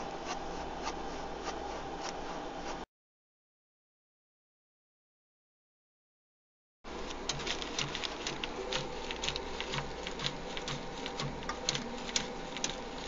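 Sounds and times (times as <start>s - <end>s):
steady low hum: 0.0s - 2.9s, 6.9s - 13.0s
rhythmic mechanical clicking: 6.9s - 13.0s.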